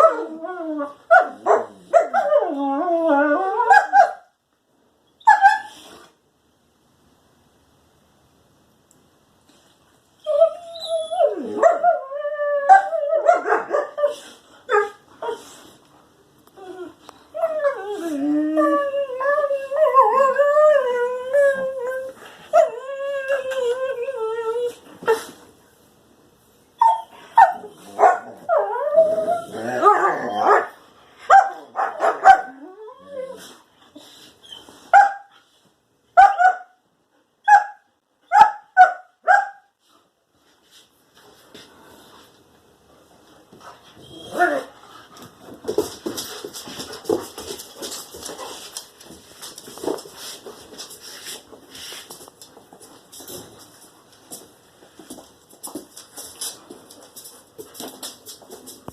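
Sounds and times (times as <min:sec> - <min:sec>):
dog whining and howling: 0:00.0 - 0:04.2, 0:10.2 - 0:15.6, 0:16.6 - 0:25.2, 0:26.8 - 0:30.7, 0:31.6 - 0:33.6, 0:44.0 - 0:44.8
dog yipping and barking: 0:03.6 - 0:04.3, 0:05.2 - 0:05.8, 0:26.8 - 0:29.2, 0:31.3 - 0:32.6, 0:34.9 - 0:35.3, 0:36.2 - 0:36.8, 0:37.4 - 0:39.7.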